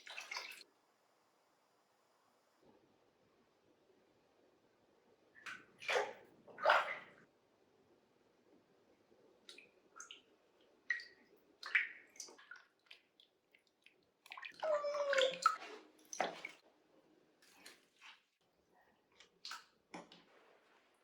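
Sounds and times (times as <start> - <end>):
bathwater splashing and dripping: 0.0 - 0.6, 9.5 - 16.6.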